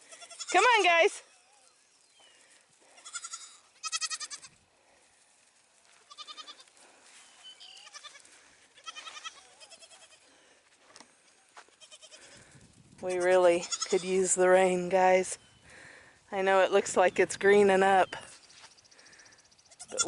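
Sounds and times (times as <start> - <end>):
goat kids bleating: 0.0 - 1.0, 2.8 - 4.6, 5.8 - 10.5, 11.5 - 12.5, 13.1 - 14.2, 19.6 - 20.0.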